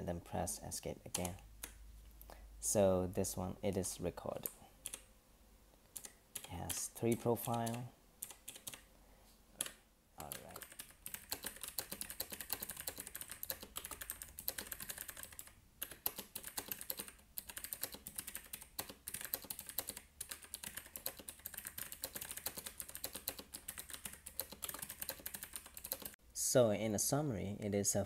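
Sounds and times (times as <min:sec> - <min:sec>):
fast typing on mechanical keyboard: 0:06.0 - 0:08.8, 0:09.6 - 0:26.2.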